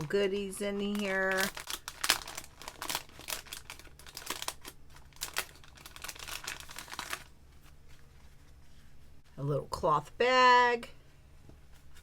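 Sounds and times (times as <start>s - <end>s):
paper and packaging crinkling: 0.0s - 8.6s.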